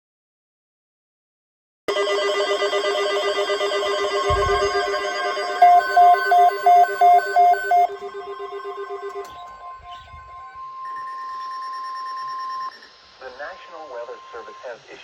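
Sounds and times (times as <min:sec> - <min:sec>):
chopped higher tone: 0:01.9 - 0:12.8
rapid alert beeping: 0:01.9 - 0:14.8
steady weather radio alert tone: 0:01.9 - 0:15.0.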